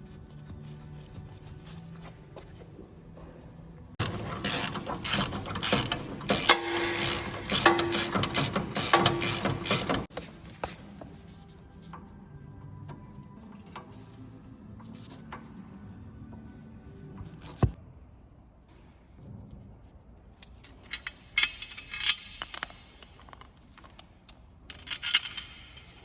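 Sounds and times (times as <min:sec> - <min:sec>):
ratchet clicking rapidly: 0:04.0 - 0:10.1.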